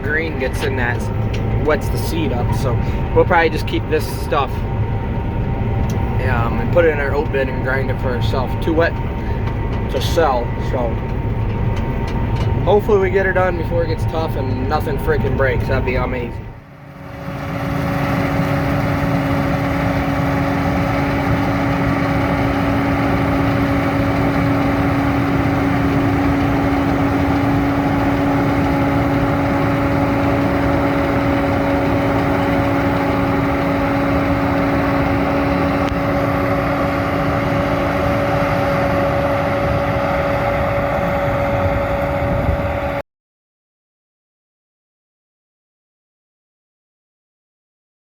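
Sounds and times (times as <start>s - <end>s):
combine harvester drone: 0.0s - 43.0s
steady machine whine: 0.0s - 43.0s.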